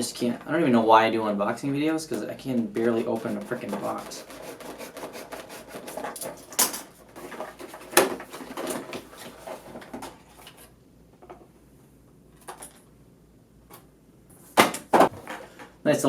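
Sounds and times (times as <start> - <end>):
packaging rustling: 2.9 - 10.6.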